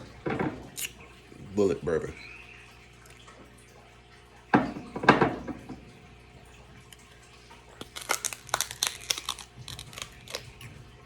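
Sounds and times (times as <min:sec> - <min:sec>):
person sipping and gulping: 0:00.8 - 0:01.0, 0:07.8 - 0:10.6.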